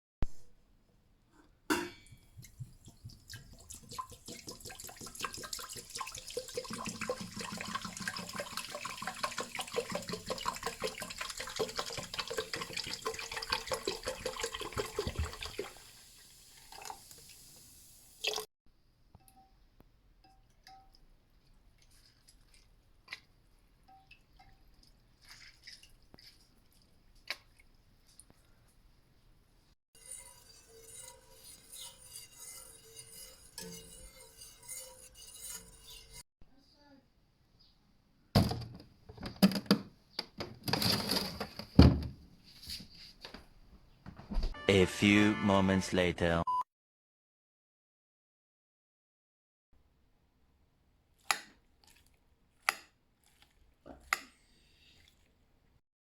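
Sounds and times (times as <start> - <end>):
soda pouring and fizzing: 2.8 - 18.5, 53.2 - 55.7.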